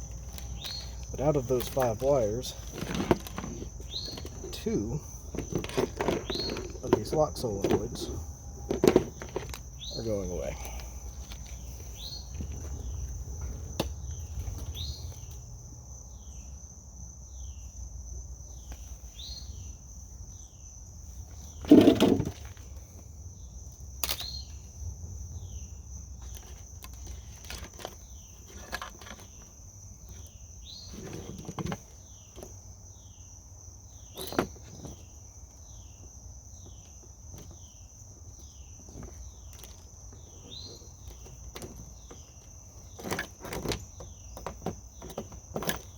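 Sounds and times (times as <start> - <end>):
crickets droning: 0.0 - 45.9
clicks and knocks from handling wiring: 38.9 - 45.9.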